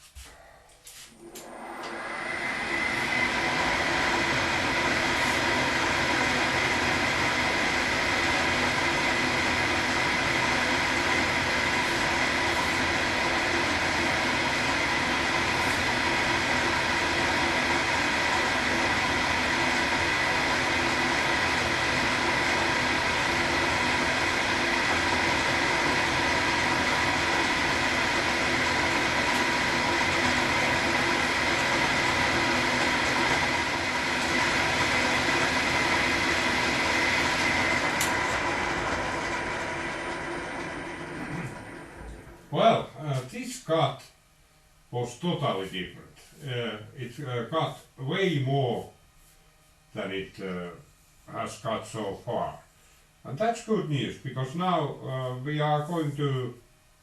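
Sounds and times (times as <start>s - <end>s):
milling machine whine: 1.2s - 43.3s.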